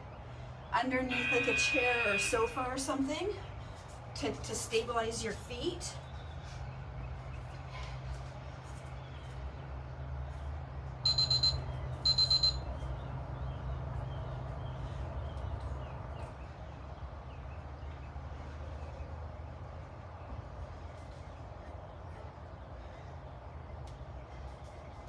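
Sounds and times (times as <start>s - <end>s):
interval timer high beeps: 11.1s - 12.6s.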